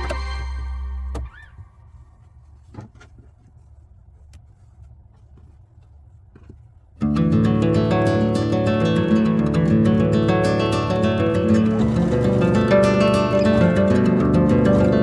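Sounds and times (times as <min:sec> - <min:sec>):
background music: 0:00.0 - 0:01.3
acoustic guitar music: 0:07.0 - 0:15.0.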